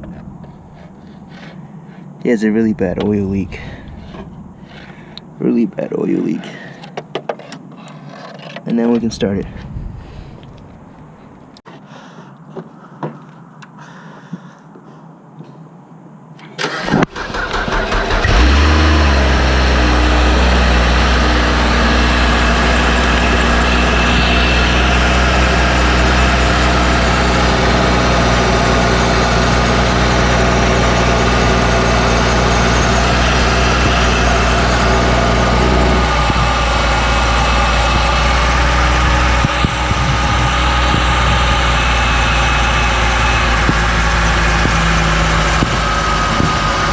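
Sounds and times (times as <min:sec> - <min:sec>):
car starter cranking: 0:16.6 - 0:46.9
car engine idling: 0:16.7 - 0:46.9.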